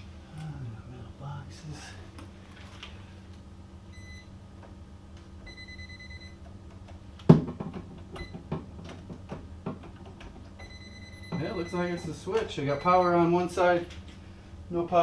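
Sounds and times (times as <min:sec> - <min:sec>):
voltage tester beeping: 0:05.4 - 0:06.4, 0:10.6 - 0:12.1, 0:12.7 - 0:13.3.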